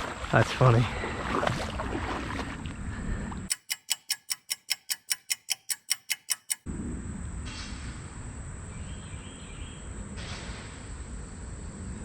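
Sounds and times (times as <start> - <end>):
creek ambience: 0.0 - 3.5
ticking clock: 3.5 - 6.7.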